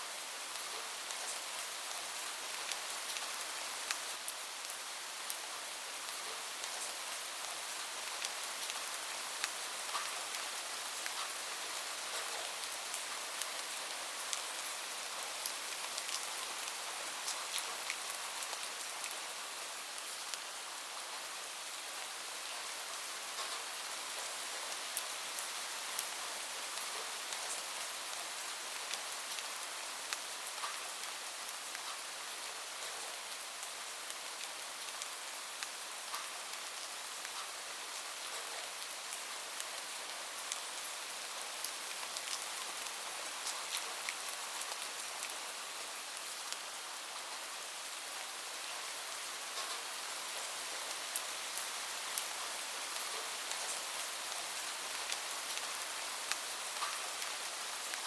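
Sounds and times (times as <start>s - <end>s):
steady rain hiss: 0.0s - 58.0s
raindrops ticking on surface: 23.3s - 32.1s, 49.4s - 58.0s.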